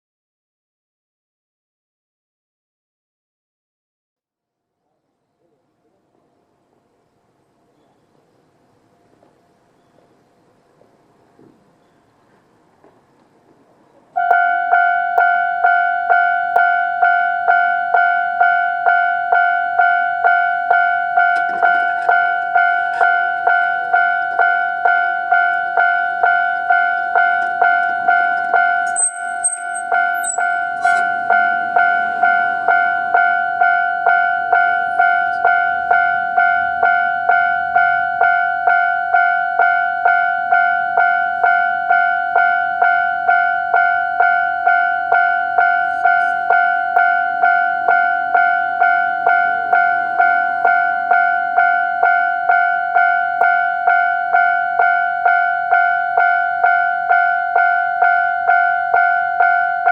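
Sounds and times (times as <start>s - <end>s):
level crossing alarm bell dinging: 14.2s - 59.9s.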